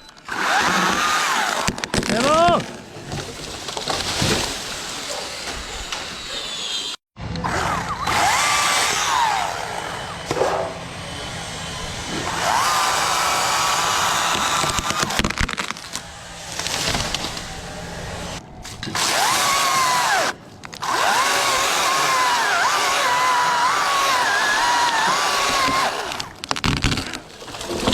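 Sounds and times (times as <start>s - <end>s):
chainsaw cutting and revving: 0.3s - 1.7s, 7.5s - 18.4s, 19.0s - 26.4s.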